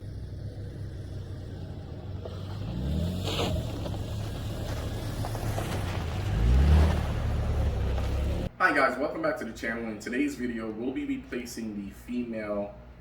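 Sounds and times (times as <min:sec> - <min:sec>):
vehicle engine revving: 0:00.0 - 0:08.5.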